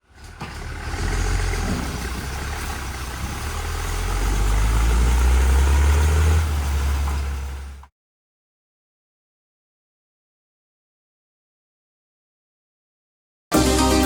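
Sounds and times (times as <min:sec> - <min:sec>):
tractor diesel engine running: 0:00.0 - 0:07.9.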